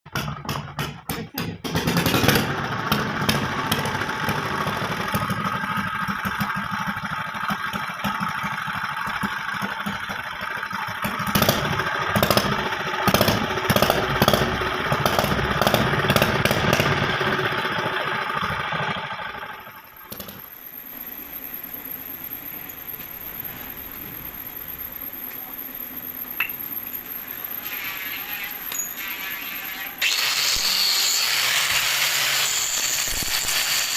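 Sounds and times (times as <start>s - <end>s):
engine running with knocks: 0.1s - 20.6s.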